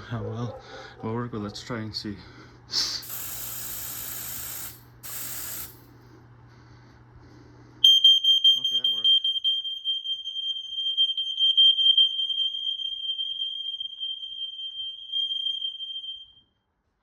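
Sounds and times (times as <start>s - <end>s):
smoke alarm high-pitched tone: 3.1s - 5.8s, 7.8s - 16.5s.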